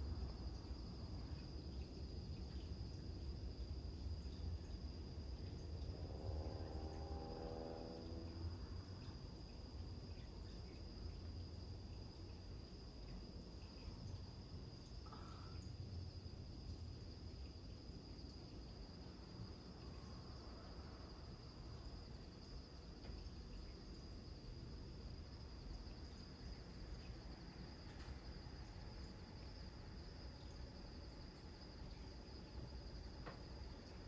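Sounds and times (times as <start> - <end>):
crickets trilling: 0.0 - 34.0.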